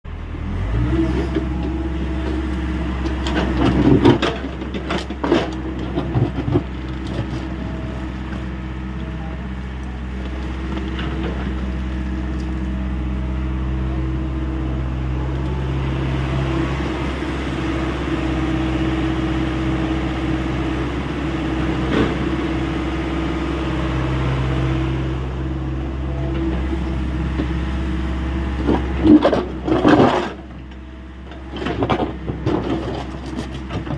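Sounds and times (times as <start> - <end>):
excavator diesel engine running: 0.1 - 33.9
metal knocks and clanks: 1.3 - 7.5.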